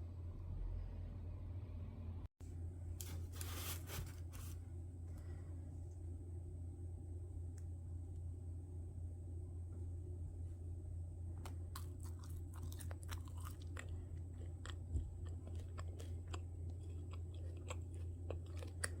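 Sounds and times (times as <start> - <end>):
steady low hum: 0.0 - 19.0
crunchy food being chewed: 11.4 - 19.0.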